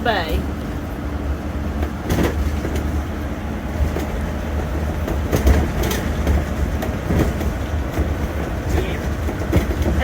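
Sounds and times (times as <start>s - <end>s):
tyre and engine rumble: 0.0s - 10.0s
knocks and rattles: 3.8s - 10.0s.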